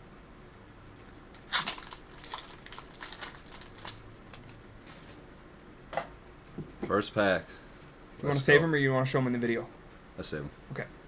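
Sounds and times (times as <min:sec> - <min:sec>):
foil wrapper tearing and crinkling: 0:01.3 - 0:05.2.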